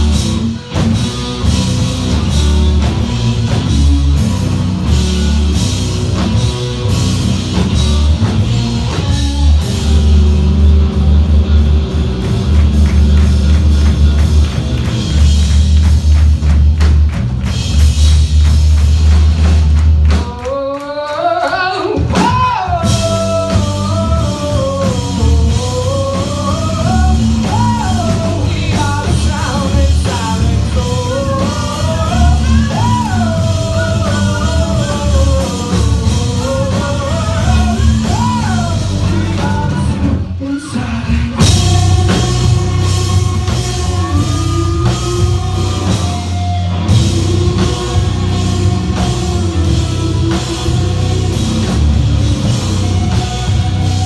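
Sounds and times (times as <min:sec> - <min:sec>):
live rock band playing: 0:00.0 - 0:20.8, 0:21.4 - 0:54.0
person singing: 0:20.1 - 0:54.0.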